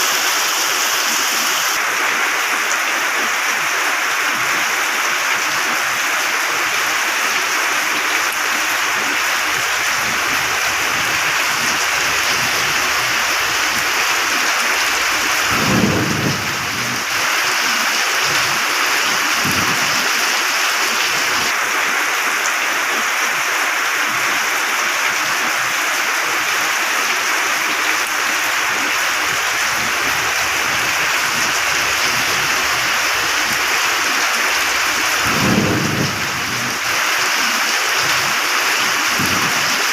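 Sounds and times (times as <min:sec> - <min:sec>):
heavy rain: 0:00.0 - 0:39.9
low thunder rumble: 0:08.4 - 0:17.4, 0:18.2 - 0:20.2, 0:28.1 - 0:37.2, 0:39.1 - 0:39.8.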